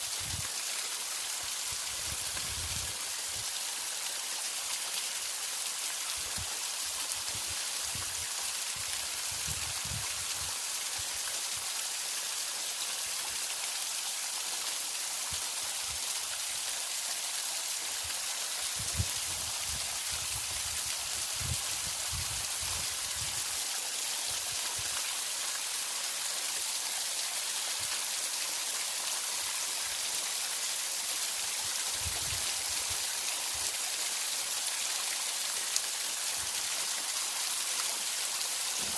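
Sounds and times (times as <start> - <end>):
waterfall hiss: 0.0 - 38.9.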